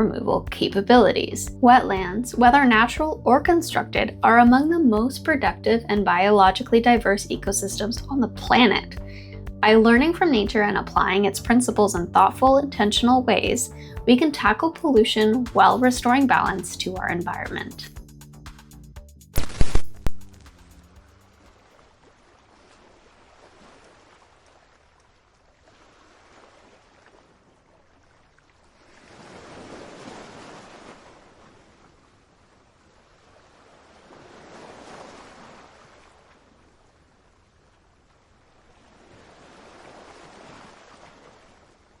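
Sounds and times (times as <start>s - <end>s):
faint waves washing in: 21.0s - 42.0s.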